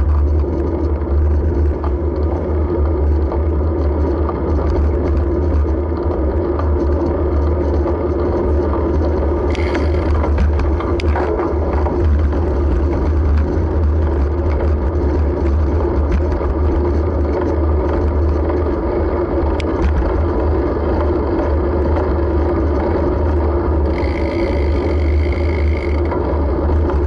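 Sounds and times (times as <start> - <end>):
bicycle road rumble: 0.0 - 27.0
small ticks and rattles: 0.0 - 27.0
high even buzz: 9.5 - 10.6, 23.9 - 26.2.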